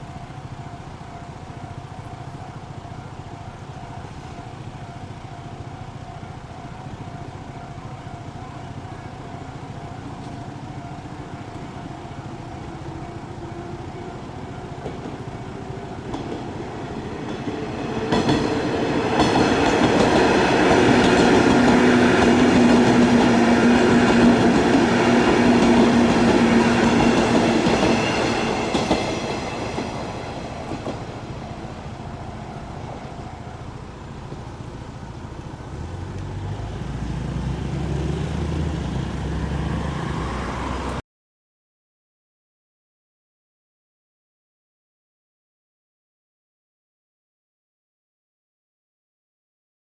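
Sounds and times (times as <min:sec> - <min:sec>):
electric train passing: 0:00.0 - 0:41.0
train motor whine: 0:08.7 - 0:35.2.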